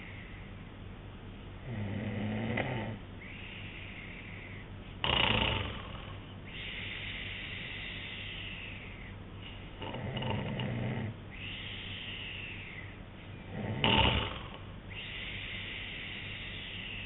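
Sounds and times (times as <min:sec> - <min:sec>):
man snoring: 0:01.6 - 0:03.0, 0:05.0 - 0:06.2, 0:09.8 - 0:11.2, 0:13.5 - 0:14.7.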